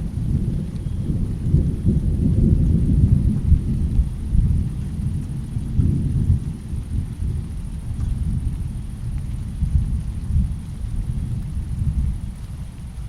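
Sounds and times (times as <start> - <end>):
thunder rumbling: 0.0 - 13.0.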